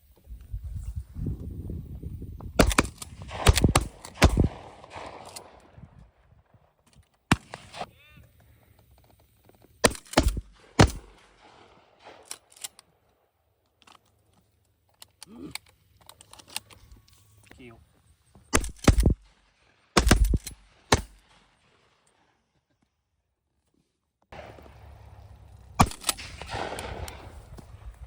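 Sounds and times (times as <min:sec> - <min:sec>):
distant gunshot pops: 0:02.6 - 0:05.8, 0:25.8 - 0:27.7
shotgun shots echoing: 0:02.6 - 0:06.2, 0:07.3 - 0:08.0, 0:09.8 - 0:13.0, 0:18.5 - 0:22.0, 0:24.3 - 0:28.0.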